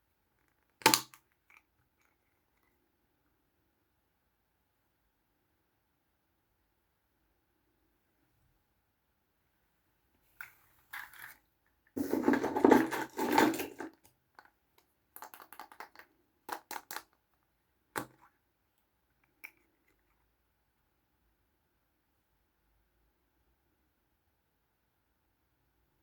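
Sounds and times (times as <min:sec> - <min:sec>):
plastic toy clicks: 0:00.8 - 0:01.2.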